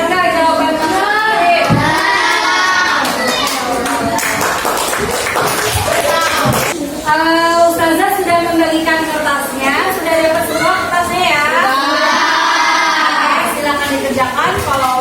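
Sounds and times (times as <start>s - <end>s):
children singing: 1.6s - 4.1s, 10.4s - 13.6s
hand claps: 1.9s - 6.8s.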